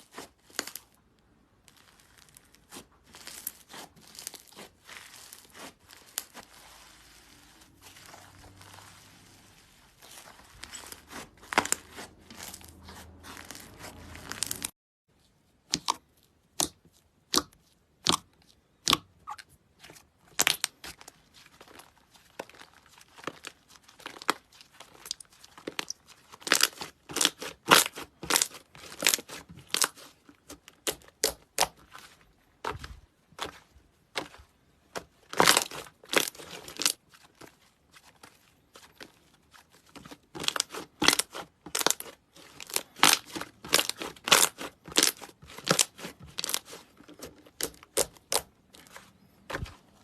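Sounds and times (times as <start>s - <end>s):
slime crinkling crackle: 0.0s - 1.0s, 1.6s - 14.7s, 20.3s - 50.0s.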